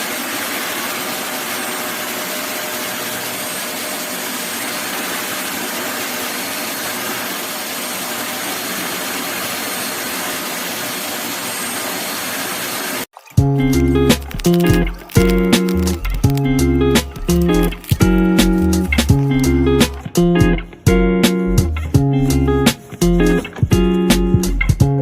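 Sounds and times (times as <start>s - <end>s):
stick vacuum cleaner running: 0.0s - 13.1s, 14.1s - 20.4s
music: 13.3s - 25.0s.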